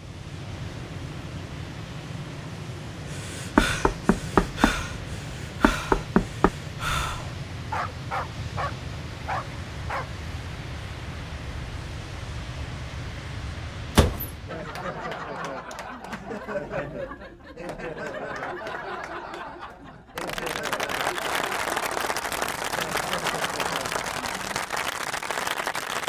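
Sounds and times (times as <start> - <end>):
low background rumble: 0.0 - 15.1
dog barking: 7.7 - 10.1
dog yelping: 7.7 - 10.1.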